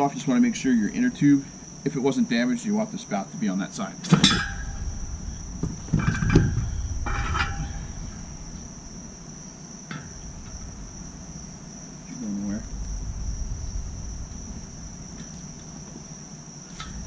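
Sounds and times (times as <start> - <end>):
crickets chirring: 0.0 - 17.0
metallic clanks and knocks: 4.1 - 8.2, 16.7 - 17.0.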